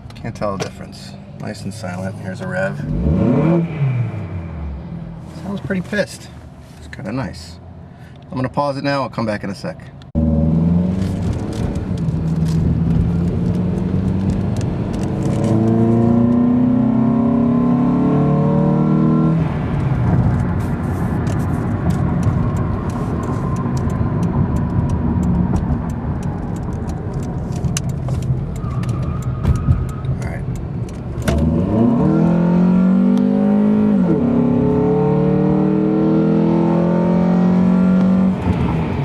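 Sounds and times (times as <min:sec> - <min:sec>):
road noise: 0:00.0 - 0:39.0
car engine accelerating: 0:01.2 - 0:05.9, 0:10.2 - 0:39.0.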